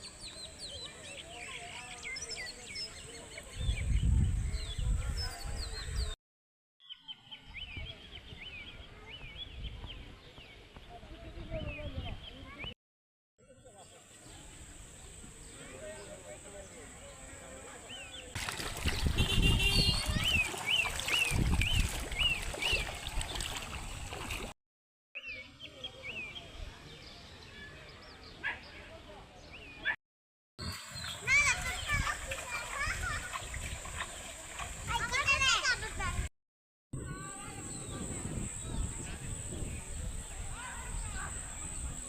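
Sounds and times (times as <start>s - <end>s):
birds chirping: 13.4s - 24.3s
water sloshing and gurgling: 18.4s - 24.6s, 30.8s - 35.4s.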